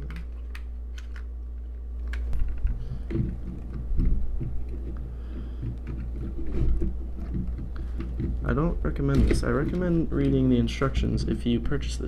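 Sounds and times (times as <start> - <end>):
plastic parts clicking: 0.0 - 8.5
low rumbling handling noise: 0.0 - 12.0.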